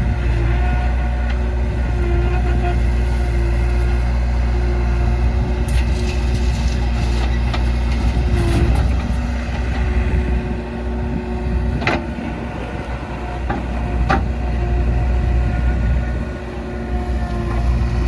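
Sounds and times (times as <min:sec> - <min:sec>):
diesel engine running under load: 0:00.0 - 0:18.0
clatters and scrapes: 0:05.6 - 0:09.9.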